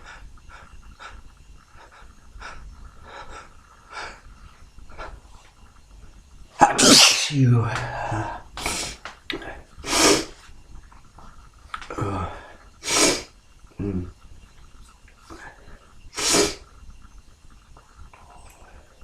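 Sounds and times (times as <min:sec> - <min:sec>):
man sneezing: 0:06.6 - 0:07.5.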